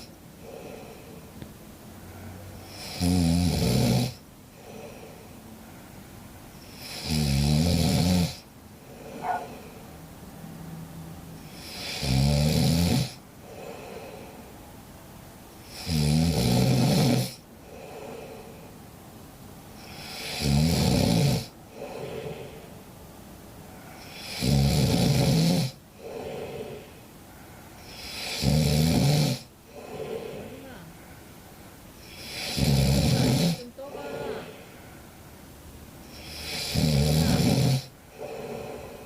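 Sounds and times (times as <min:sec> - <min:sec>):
cat snoring: 0:00.0 - 0:01.2, 0:02.6 - 0:05.2, 0:06.6 - 0:09.8, 0:11.4 - 0:14.4, 0:15.7 - 0:18.7, 0:19.8 - 0:22.7, 0:23.9 - 0:27.0, 0:27.8 - 0:30.9, 0:32.0 - 0:34.4, 0:36.1 - 0:39.0.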